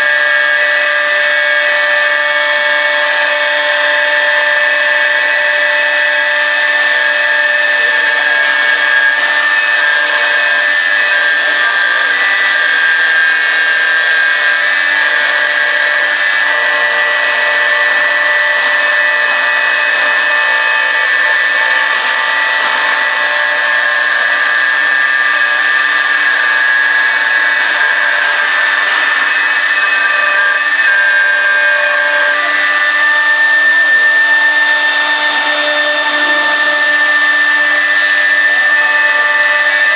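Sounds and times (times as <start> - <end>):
router spindle whining: 0.0 - 39.9.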